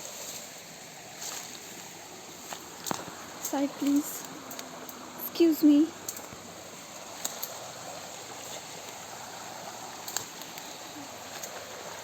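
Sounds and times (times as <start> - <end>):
river water rushing: 0.0 - 12.0
faint clicks: 2.5 - 5.0, 6.0 - 6.4, 7.2 - 7.6, 10.0 - 11.6.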